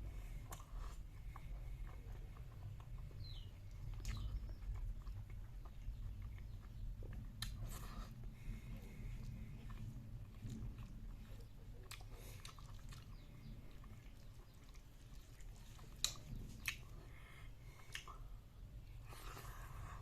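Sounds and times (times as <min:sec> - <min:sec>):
person chewing: 0:00.0 - 0:20.0
wet mouth clicks: 0:06.2 - 0:07.8, 0:15.4 - 0:16.9, 0:17.8 - 0:18.3.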